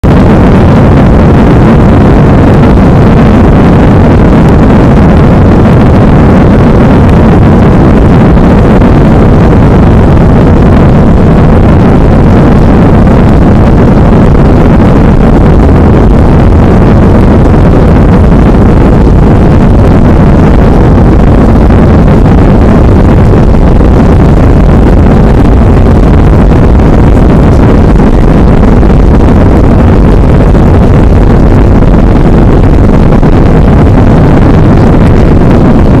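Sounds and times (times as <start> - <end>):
distorted jet engine rumble: 0.0 - 36.0.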